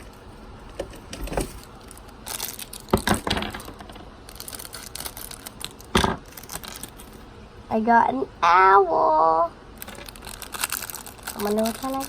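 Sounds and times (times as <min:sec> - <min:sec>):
plastic bag rustling: 0:00.0 - 0:07.3, 0:09.8 - 0:12.0.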